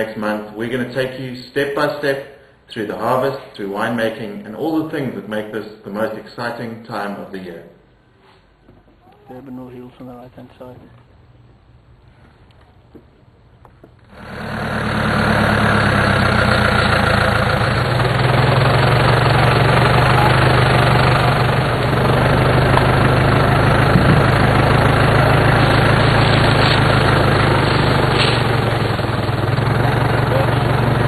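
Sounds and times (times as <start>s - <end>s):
vehicle engine droning: 13.6s - 31.0s.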